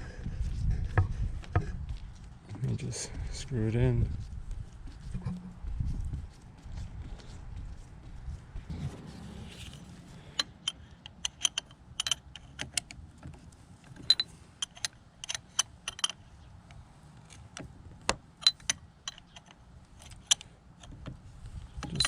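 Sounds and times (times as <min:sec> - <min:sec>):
tools and parts handled: 0:09.6 - 0:16.3, 0:18.4 - 0:21.1, 0:21.8 - 0:22.0
sharp clicks of cap screwing: 0:10.4 - 0:12.9, 0:14.0 - 0:16.2, 0:18.4 - 0:21.0.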